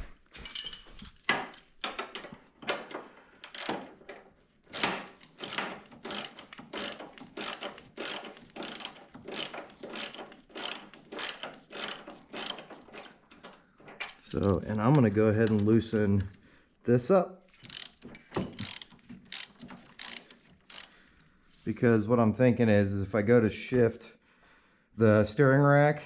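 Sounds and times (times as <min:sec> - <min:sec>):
ratchet wrench clicking: 0:02.9 - 0:03.9, 0:04.7 - 0:14.3, 0:17.6 - 0:21.0.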